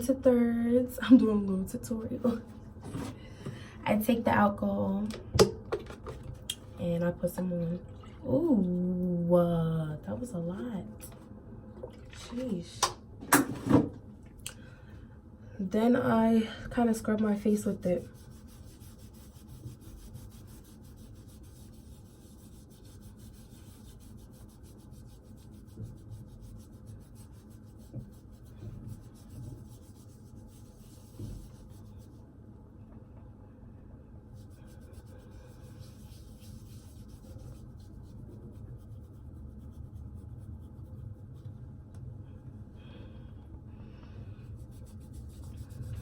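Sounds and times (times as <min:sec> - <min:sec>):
paper towel rubbing on skin: 0:17.7 - 0:32.2, 0:34.3 - 0:41.6, 0:44.4 - 0:46.0.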